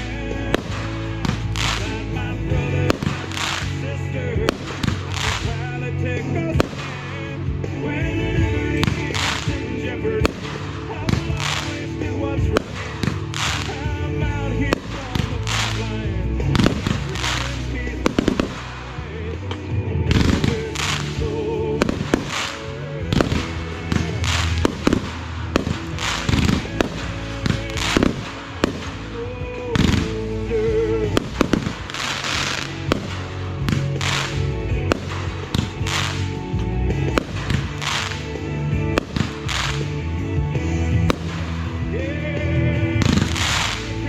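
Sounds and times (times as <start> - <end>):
fireworks bangs and crackles: 0.0 - 44.0
music playing: 0.0 - 44.0.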